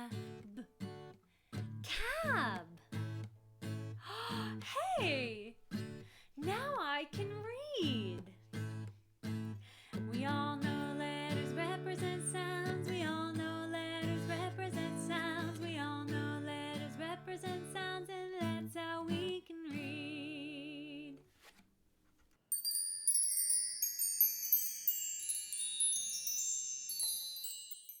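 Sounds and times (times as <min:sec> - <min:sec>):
instrumental music: 0:21.3 - 0:28.0
high tinkling chime notes: 0:22.5 - 0:28.0.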